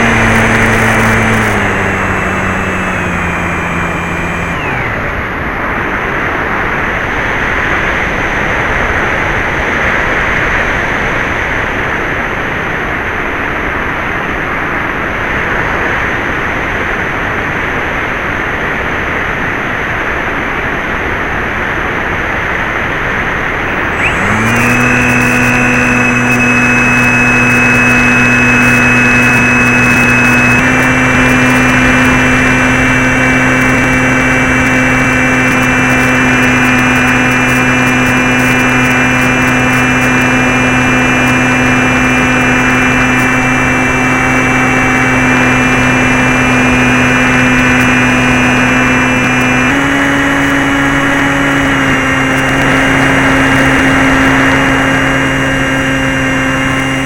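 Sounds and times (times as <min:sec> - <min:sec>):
model plane motor: 0:00.0 - 0:11.8, 0:23.4 - 0:57.0.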